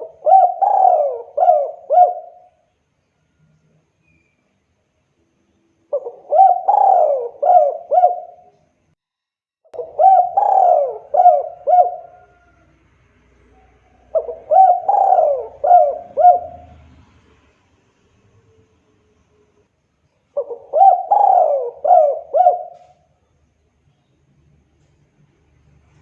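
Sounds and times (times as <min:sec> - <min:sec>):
dove cooing: 0:00.0 - 0:02.6, 0:05.9 - 0:08.6, 0:09.8 - 0:12.7, 0:13.4 - 0:16.9, 0:20.4 - 0:23.1.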